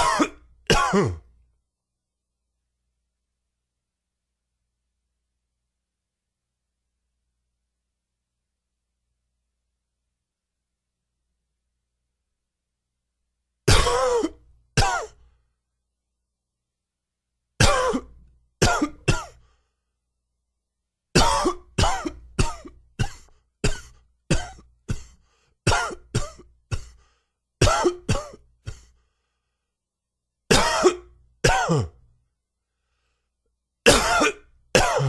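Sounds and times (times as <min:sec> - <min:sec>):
man coughing: 0:00.0 - 0:01.4, 0:13.7 - 0:15.2, 0:17.6 - 0:19.4, 0:21.2 - 0:29.0, 0:30.5 - 0:32.0, 0:33.9 - 0:35.0.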